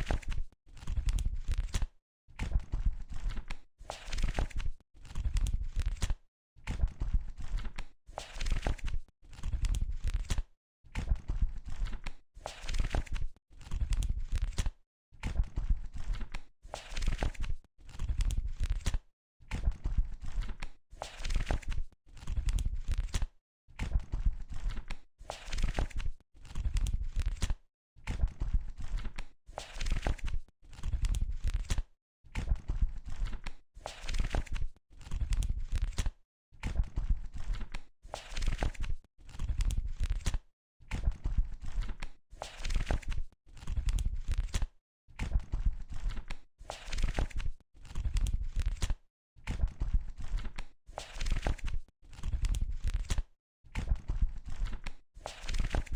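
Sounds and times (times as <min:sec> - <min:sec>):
book pages flipping: 0:00.0 - 0:01.9, 0:03.2 - 0:06.2, 0:07.4 - 0:10.4, 0:11.7 - 0:14.7, 0:15.9 - 0:19.0, 0:20.2 - 0:23.3, 0:24.5 - 0:27.6, 0:28.8 - 0:31.8, 0:33.0 - 0:36.1, 0:37.3 - 0:40.4, 0:41.6 - 0:44.7, 0:45.9 - 0:49.0, 0:50.2 - 0:53.3, 0:54.4 - 0:55.9.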